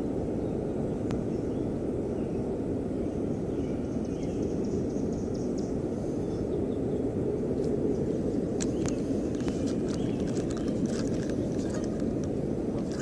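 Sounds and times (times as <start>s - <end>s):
rushing outdoor noise: 0.0s - 13.0s.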